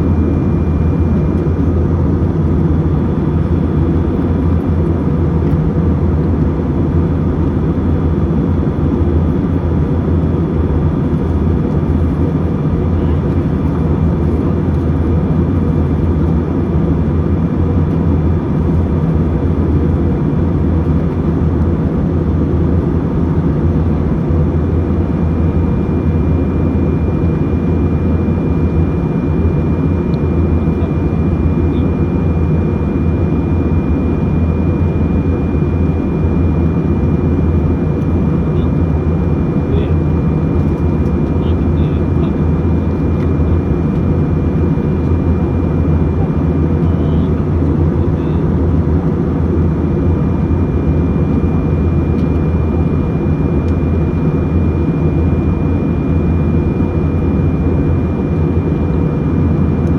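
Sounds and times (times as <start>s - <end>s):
airliner cabin rumble: 0.0s - 59.9s.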